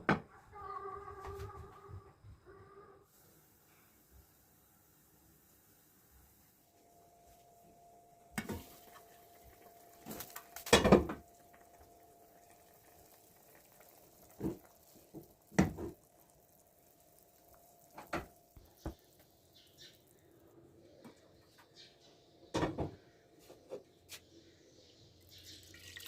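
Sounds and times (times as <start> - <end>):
faint steady hum: 0.1 - 25.6
pots and pans clattering: 10.1 - 11.3.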